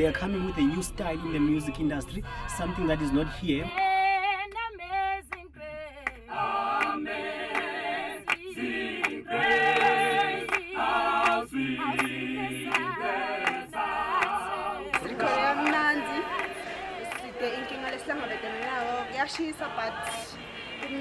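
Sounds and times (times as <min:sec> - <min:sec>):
a cappella choir singing: 0:00.0 - 0:21.0
single voice singing: 0:05.3 - 0:21.0.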